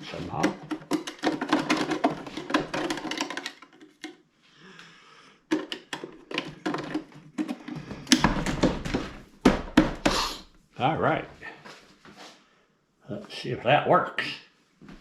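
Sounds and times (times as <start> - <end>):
plastic cover clicking and knocking: 0.0 - 4.2, 5.4 - 10.2.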